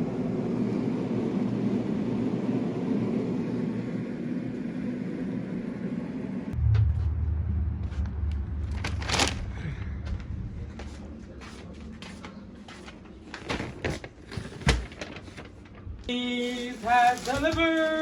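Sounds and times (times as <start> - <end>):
low rumble: 6.4 - 11.9
groceries knocking and rustling: 10.8 - 18.0.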